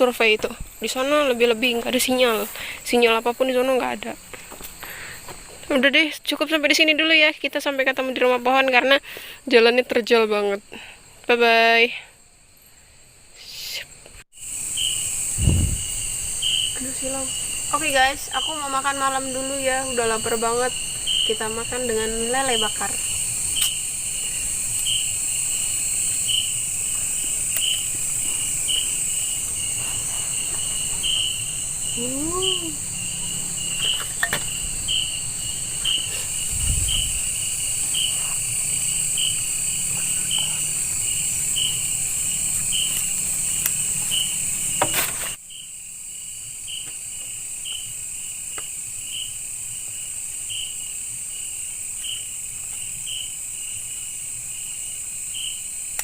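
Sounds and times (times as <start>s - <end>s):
cricket chirping: 0.0s - 56.0s
insects shrill drone: 0.0s - 56.0s.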